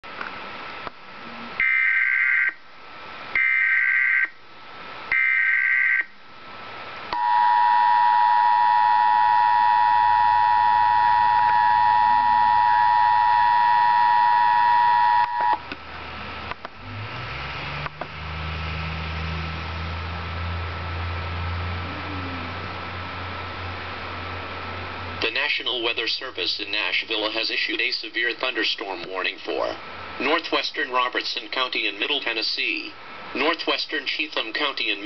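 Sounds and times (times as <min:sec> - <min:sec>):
two-tone alarm: 0:01.6 - 0:02.6, 0:03.4 - 0:04.4, 0:05.1 - 0:06.1, 0:07.2 - 0:15.6.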